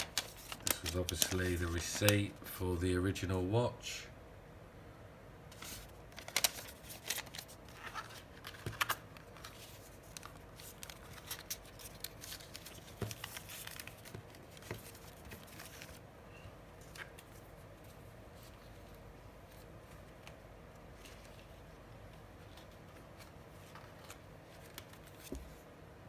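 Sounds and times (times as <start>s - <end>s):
paper rustling and crinkling: 0.0s - 2.4s, 5.5s - 16.1s, 16.7s - 25.7s.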